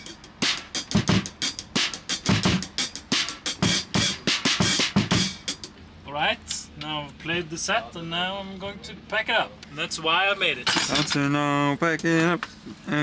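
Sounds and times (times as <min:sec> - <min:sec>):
drum kit playing busy beat: 0:00.0 - 0:05.8.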